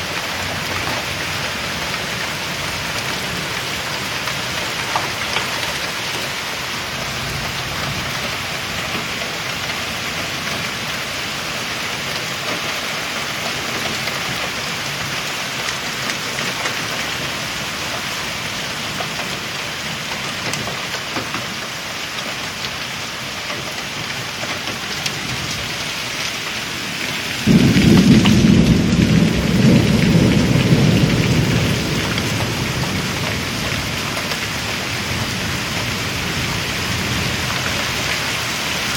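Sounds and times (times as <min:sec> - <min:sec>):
steady rain falling: 0:00.0 - 0:38.9
thunder clap and rumble: 0:27.0 - 0:38.0.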